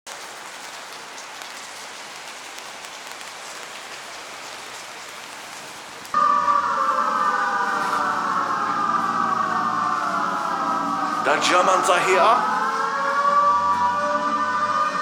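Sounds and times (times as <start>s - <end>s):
loud pitched tone: 6.2s - 15.0s.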